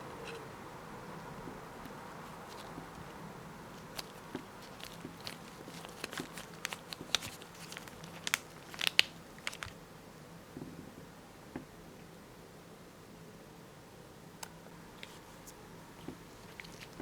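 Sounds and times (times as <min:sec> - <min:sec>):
small clicks and crackles: 0:01.2 - 0:09.8, 0:14.4 - 0:17.0.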